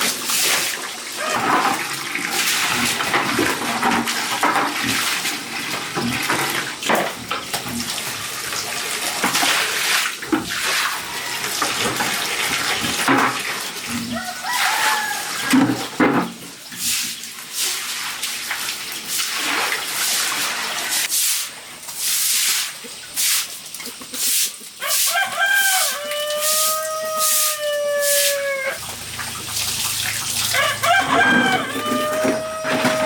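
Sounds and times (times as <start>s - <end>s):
rooster crowing: 10.8s - 11.8s, 14.1s - 15.6s, 24.8s - 28.8s, 30.5s - 33.0s.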